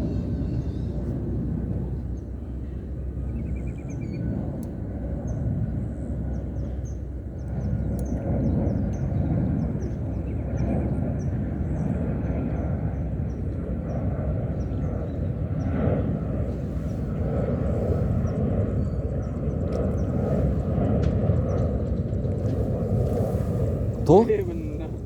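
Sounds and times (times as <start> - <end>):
low outdoor rumbling: 0.0 - 25.0.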